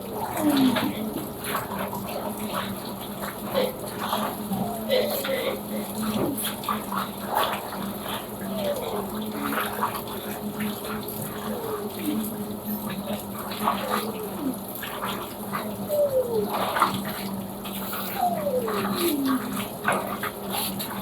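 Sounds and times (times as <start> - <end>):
washing machine motor whine: 0.0 - 21.0
washing machine water sloshing: 0.0 - 21.0
steady hum: 8.3 - 20.2.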